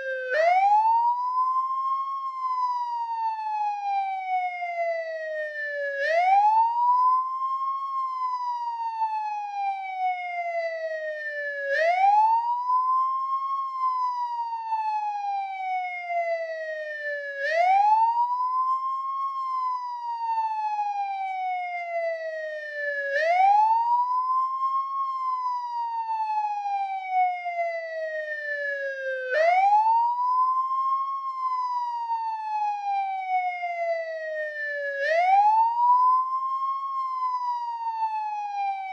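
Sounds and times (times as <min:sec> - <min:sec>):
police siren wailing: 0:00.0 - 0:38.9.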